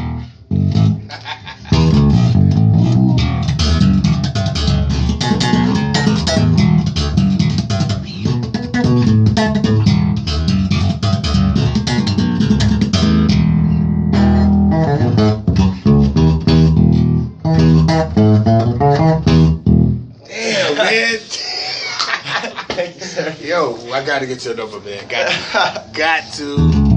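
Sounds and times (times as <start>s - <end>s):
electric bass funk line: 0.0s - 20.2s, 26.6s - 26.9s.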